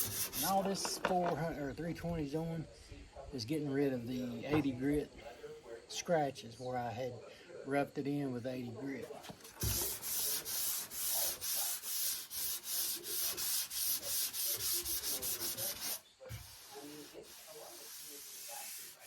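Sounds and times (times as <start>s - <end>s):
sandpaper rubbing on filler: 0.0s - 1.4s, 9.5s - 19.0s.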